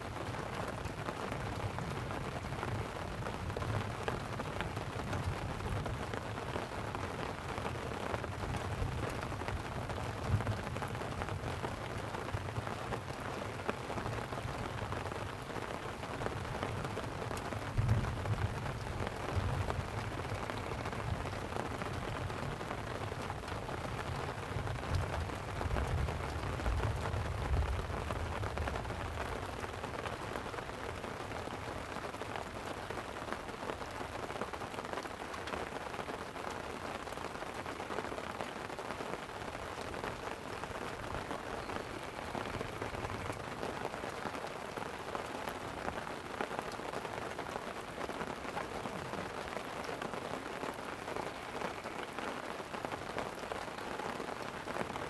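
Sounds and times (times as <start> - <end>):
light rain on a tent: 0.0 - 55.0.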